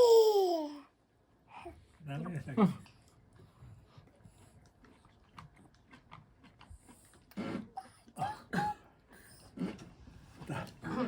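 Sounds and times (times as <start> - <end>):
toddler vocalizing: 0.0 - 0.8.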